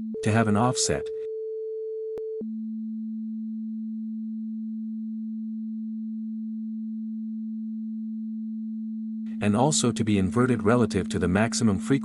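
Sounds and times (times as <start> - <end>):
sine-wave tone: 0.0 - 11.2.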